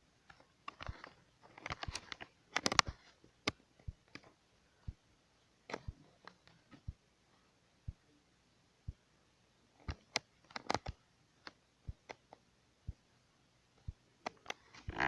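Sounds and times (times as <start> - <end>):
light clicks and taps: 9.8 - 13.0.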